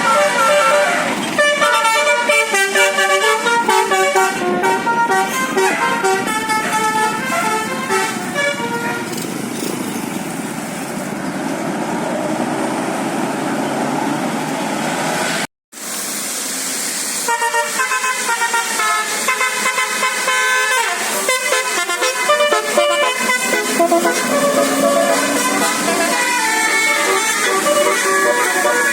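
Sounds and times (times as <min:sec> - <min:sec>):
bus musical air horn: 0:00.0 - 0:09.2, 0:17.2 - 0:28.9
vehicle passing: 0:22.6 - 0:28.9.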